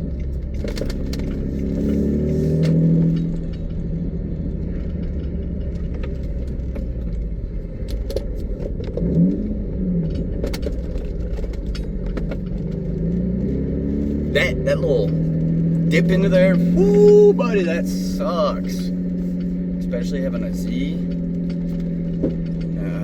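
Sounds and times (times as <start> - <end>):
car engine and road noise: 0.0 - 23.0.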